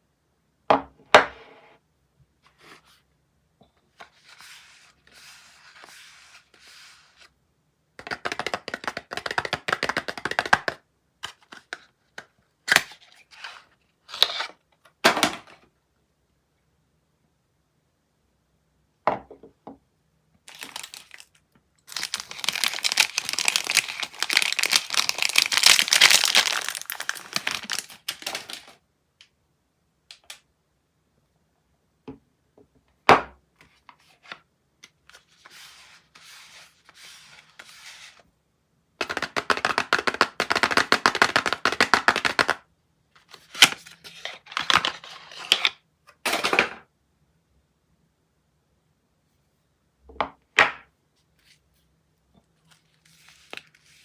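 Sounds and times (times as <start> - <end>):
packaging tearing and crinkling: 20.5 - 28.7.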